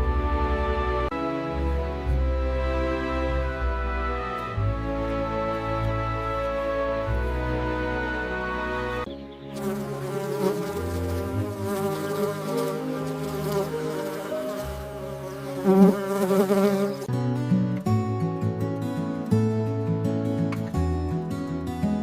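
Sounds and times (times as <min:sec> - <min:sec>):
soft background music: 0:00.0 - 0:22.0
flying insect buzzing: 0:09.5 - 0:17.1.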